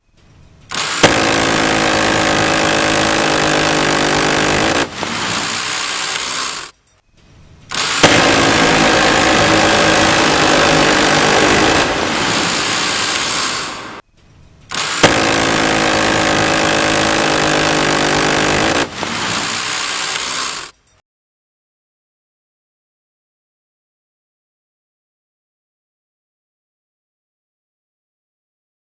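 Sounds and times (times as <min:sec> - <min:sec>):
gatling gun firing bursts: 0:00.7 - 0:06.7, 0:07.7 - 0:14.0, 0:14.7 - 0:20.7.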